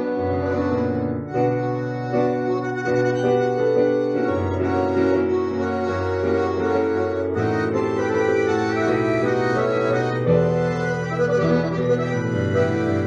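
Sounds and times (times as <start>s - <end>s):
instrumental music with sustained chords: 0.0s - 13.0s.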